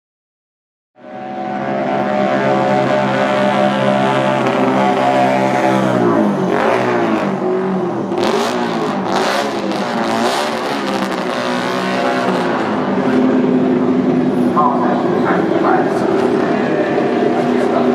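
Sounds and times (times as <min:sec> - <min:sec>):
engine blips: 0:01.0 - 0:17.9
race car engine idling: 0:11.1 - 0:17.9.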